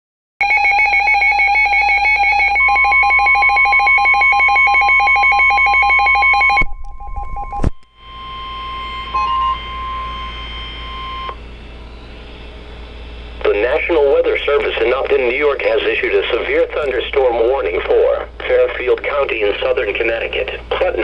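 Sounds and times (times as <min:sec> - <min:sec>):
warbling electronic alarm: 0:00.4 - 0:15.0
steady high tone: 0:06.2 - 0:18.2
radio hiss: 0:12.1 - 0:21.0.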